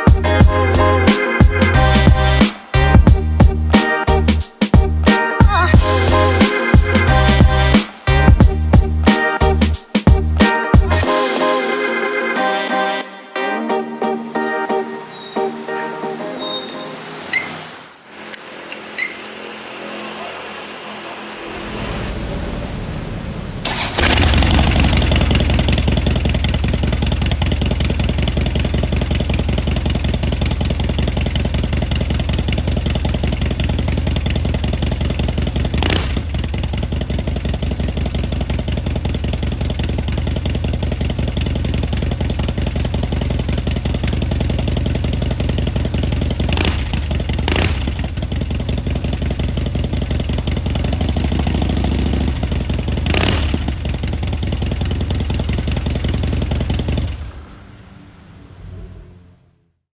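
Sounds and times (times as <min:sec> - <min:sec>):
motorcycle engine idling: 0:22.2 - 0:57.6
motorcycle throttle blips: 0:23.2 - 0:57.5.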